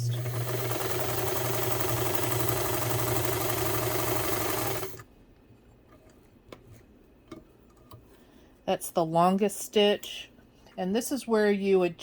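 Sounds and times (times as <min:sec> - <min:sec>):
sewing machine running: 0:00.0 - 0:05.0.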